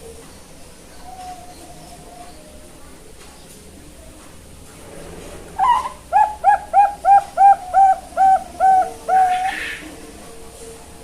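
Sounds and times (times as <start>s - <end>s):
dove cooing: 5.6s - 10.0s.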